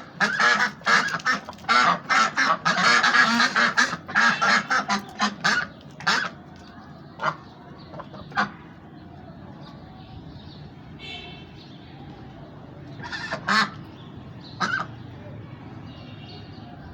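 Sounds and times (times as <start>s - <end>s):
ducks quacking: 0.0s - 6.5s, 7.2s - 8.8s, 13.0s - 15.1s.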